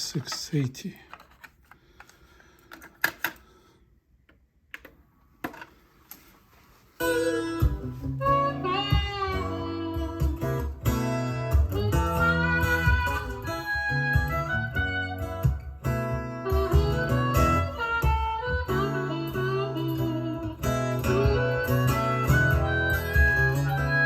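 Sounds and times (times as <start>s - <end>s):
guitar music from cassette: 7.0s - 24.0s.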